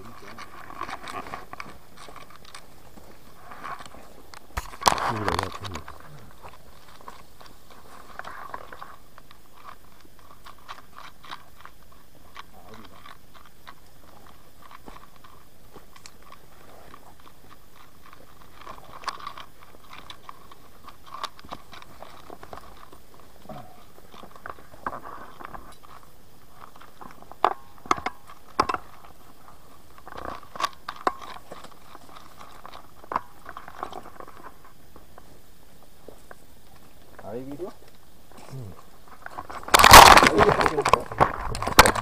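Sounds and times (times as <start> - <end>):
twigs and leaves crunching: 0.0 - 42.0.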